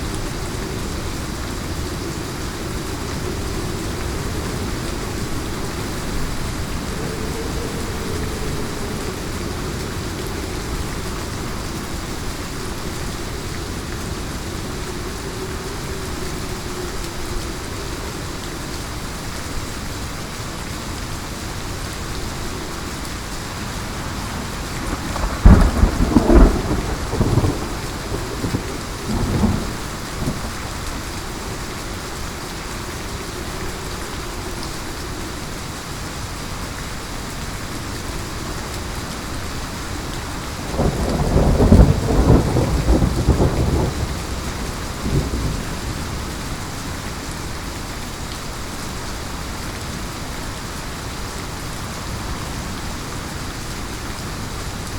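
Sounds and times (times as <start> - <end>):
thunder rumbling: 0.0 - 17.8, 22.2 - 32.4, 40.1 - 47.6
heavy rain: 0.0 - 54.9.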